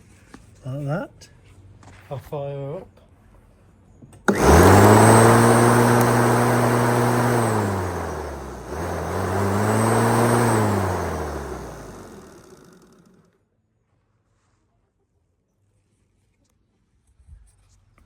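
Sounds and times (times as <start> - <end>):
lawnmower switch click: 4.3 - 13.0
electric lawnmower motor whirring: 4.3 - 13.3.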